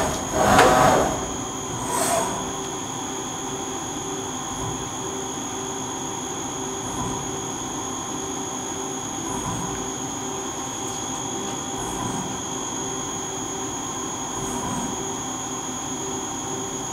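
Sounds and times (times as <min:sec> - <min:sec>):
mechanical noise: 0:00.0 - 0:02.9
low machine hum: 0:00.0 - 0:16.9
machine high-pitched whine: 0:00.0 - 0:16.9.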